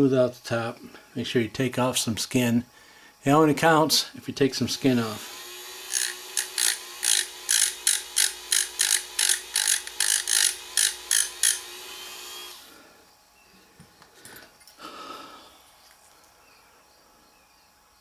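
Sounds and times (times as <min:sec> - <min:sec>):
faint steady hum: 0:00.0 - 0:18.0
hand file scraping metal: 0:05.9 - 0:11.7.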